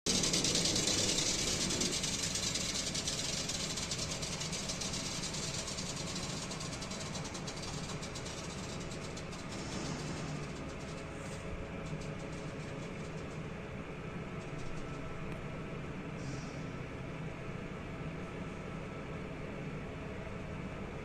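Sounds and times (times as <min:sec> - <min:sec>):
fast regular ticking: 0:00.1 - 0:15.4
elevator machinery humming: 0:00.1 - 0:16.2.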